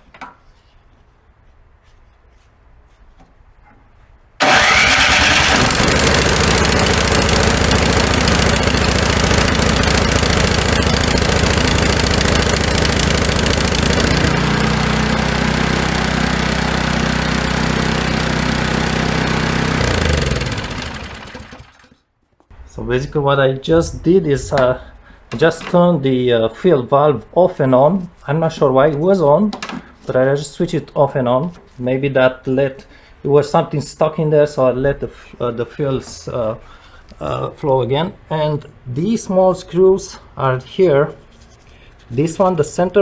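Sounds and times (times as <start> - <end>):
small gasoline engine running: 4.4 - 22.0.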